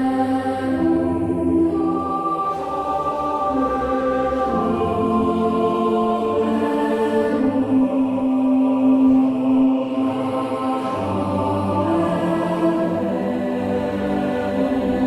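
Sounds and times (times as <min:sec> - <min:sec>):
choir-like voices holding chords: 0:00.0 - 0:15.0.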